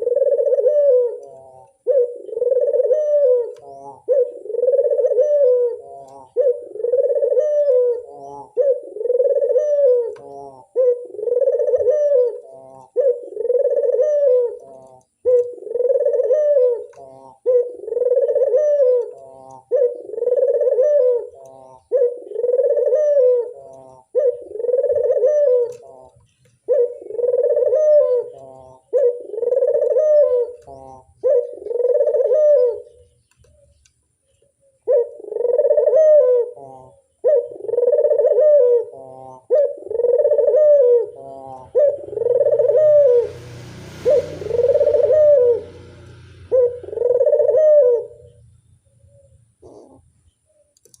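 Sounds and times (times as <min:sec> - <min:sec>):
dove cooing: 0:00.0 - 0:33.8, 0:34.6 - 0:50.7
brief rushing noise: 0:42.6 - 0:47.0.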